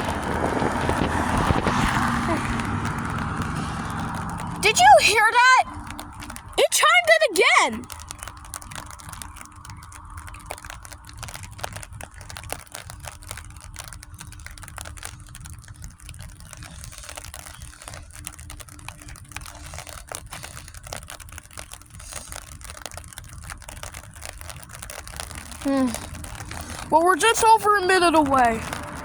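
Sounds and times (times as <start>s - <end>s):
rain pattering: 0.0s - 29.0s.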